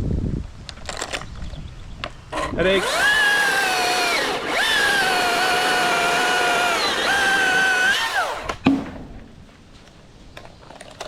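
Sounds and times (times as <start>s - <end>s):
electric chainsaw whining: 2.3s - 8.6s.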